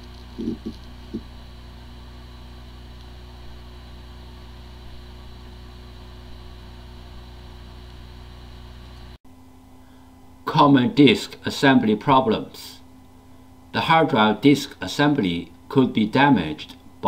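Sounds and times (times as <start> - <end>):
hard drive low knocks: 0.0 - 1.7
hard drive spinning: 0.0 - 9.2.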